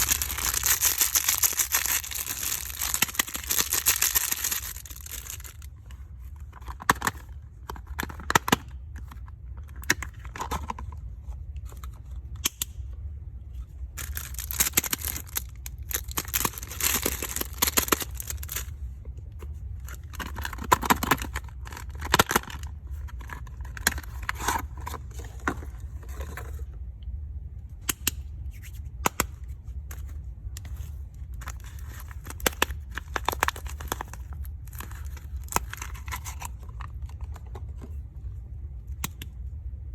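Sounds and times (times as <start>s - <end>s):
plastic packaging crinkling: 0.0s - 5.7s, 14.0s - 18.7s, 31.4s - 37.4s
steady low hum: 0.0s - 39.9s.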